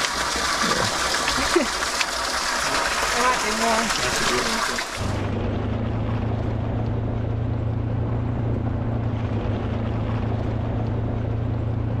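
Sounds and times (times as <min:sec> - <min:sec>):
low motor hum: 0:02.8 - 0:12.0.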